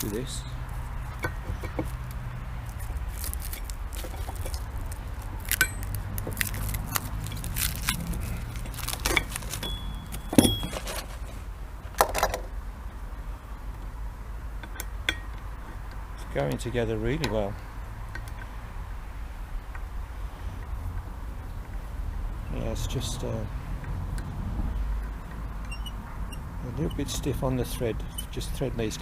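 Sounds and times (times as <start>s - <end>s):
metal parts clinking and knocking: 5.4s - 12.5s
short high squeak: 25.7s - 26.4s.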